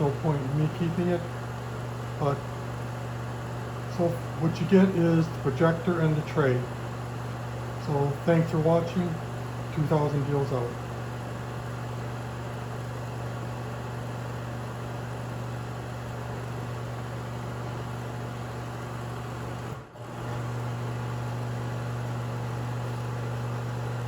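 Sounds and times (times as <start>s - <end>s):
slide projector fan humming: 0.0s - 24.0s.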